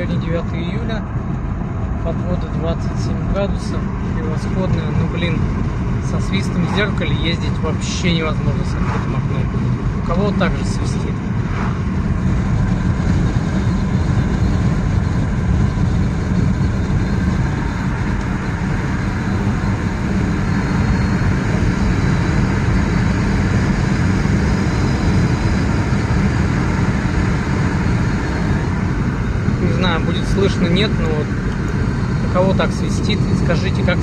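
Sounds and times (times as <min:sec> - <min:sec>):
wind and road noise in car: 0:00.0 - 0:34.0.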